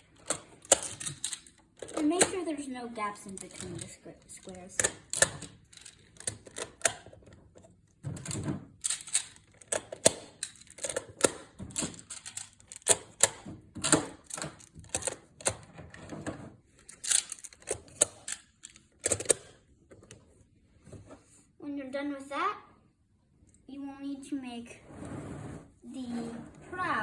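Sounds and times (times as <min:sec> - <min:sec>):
tiles clattering rattles: 0:00.1 - 0:02.4, 0:03.2 - 0:07.4, 0:08.0 - 0:19.5.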